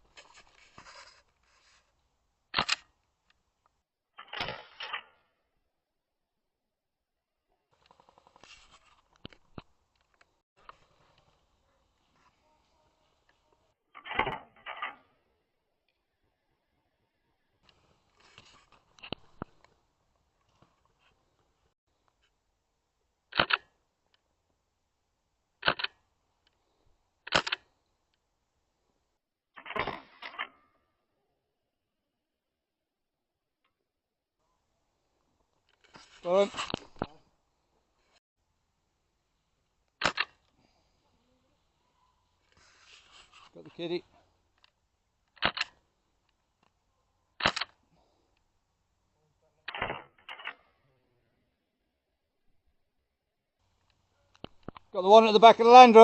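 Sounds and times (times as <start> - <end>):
quick clicks: 23.3 - 23.8, 25.6 - 26.0, 40.0 - 40.5, 45.3 - 45.8.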